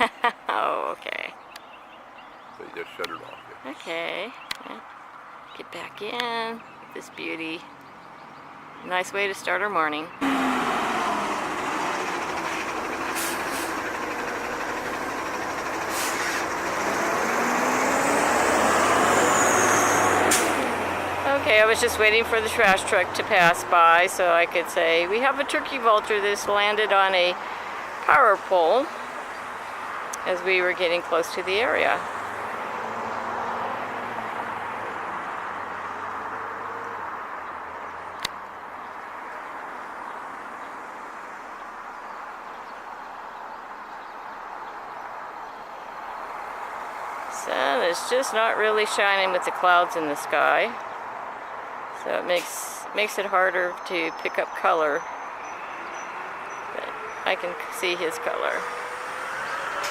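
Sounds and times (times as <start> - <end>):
garbage truck driving past: 10.2 - 23.8, 55.4 - 59.9
passing vehicle engine and tyres: 10.2 - 59.9
short hisses: 13.1 - 13.9, 15.9 - 16.6.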